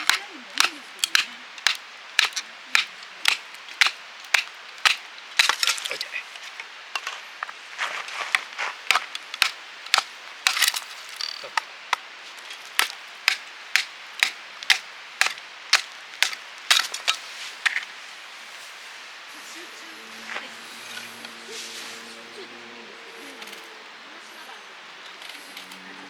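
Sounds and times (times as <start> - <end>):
sharp knocks: 0.0 - 5.8, 12.8 - 17.0
crunching: 0.0 - 18.0.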